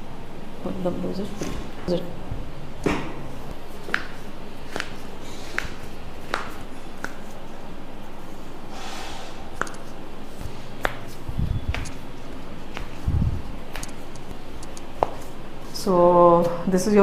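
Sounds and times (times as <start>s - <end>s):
breathy rush of noise: 8.7s - 10.1s.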